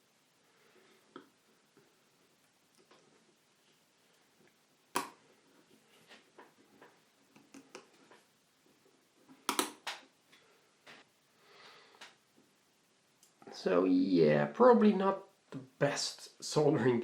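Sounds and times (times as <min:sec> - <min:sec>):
circuit board clicks and taps: 0:05.0 - 0:05.2, 0:09.5 - 0:10.0.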